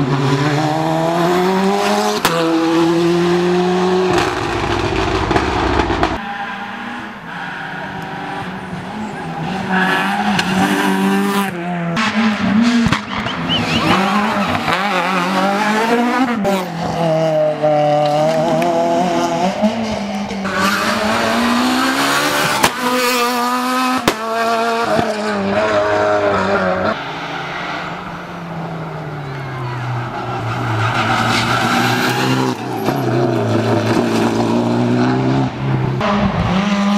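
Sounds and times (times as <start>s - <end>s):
rally car engines revving: 0.0s - 36.9s
tyre squeal: 13.1s - 14.4s.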